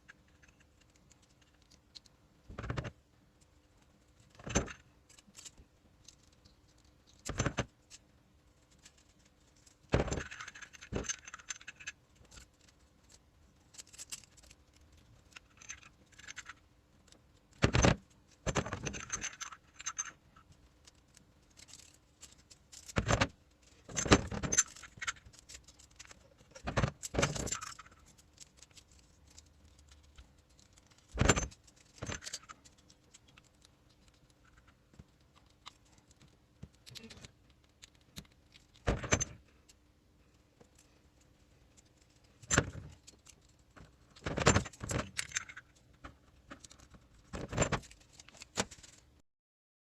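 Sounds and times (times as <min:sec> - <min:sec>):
metal parts and tools clinking: 0:08.8 - 0:14.6, 0:15.2 - 0:16.7, 0:17.6 - 0:34.8, 0:35.4 - 0:39.8, 0:41.7 - 0:49.0.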